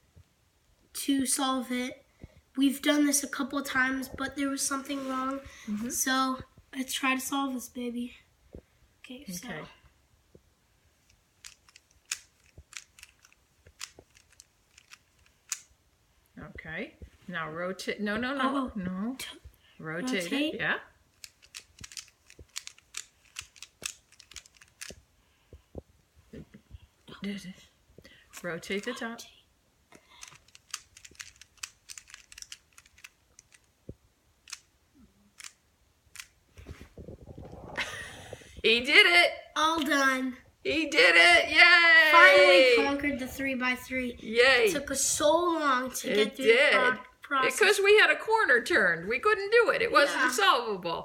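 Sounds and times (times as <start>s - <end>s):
puzzle cube plastic clicks: 11.0s - 15.7s, 21.1s - 25.0s, 30.1s - 33.8s, 34.4s - 34.7s, 35.3s - 36.4s.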